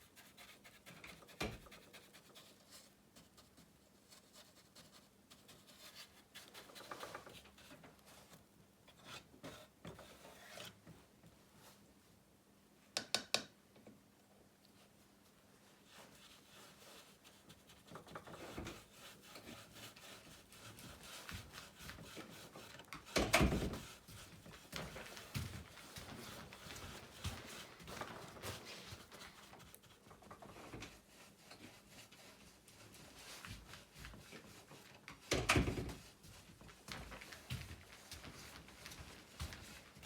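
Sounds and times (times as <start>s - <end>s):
rubbing strokes on wood: 15.7s - 34.9s.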